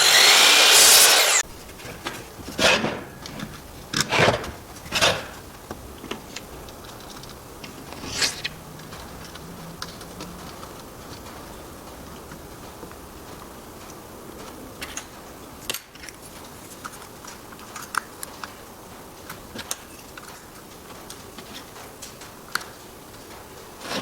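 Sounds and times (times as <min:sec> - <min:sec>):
power tool running loudly: 0:00.0 - 0:01.4.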